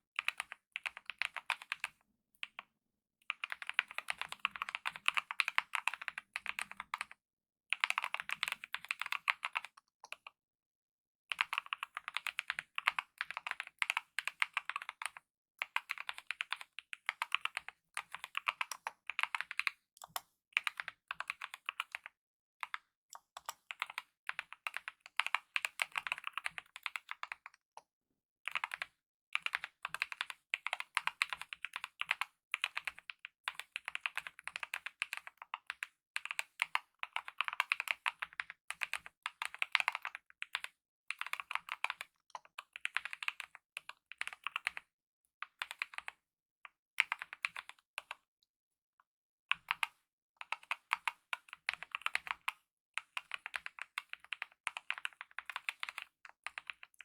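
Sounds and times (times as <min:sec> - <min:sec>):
mechanical keyboard typing: 0:00.2 - 0:01.9, 0:03.4 - 0:07.1, 0:07.7 - 0:10.2, 0:11.4 - 0:22.1, 0:28.5 - 0:44.8, 0:47.0 - 0:47.8, 0:50.5 - 0:57.0.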